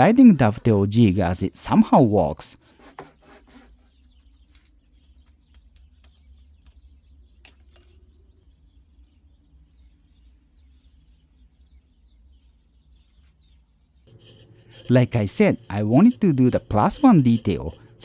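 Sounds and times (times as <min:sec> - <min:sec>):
low steady hum: 0:14.1 - 0:18.0.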